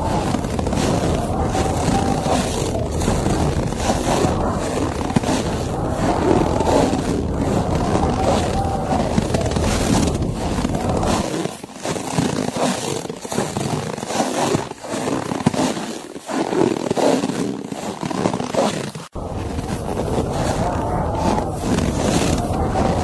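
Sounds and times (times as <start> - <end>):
wind rumble: 0.0 - 11.3, 19.2 - 23.0.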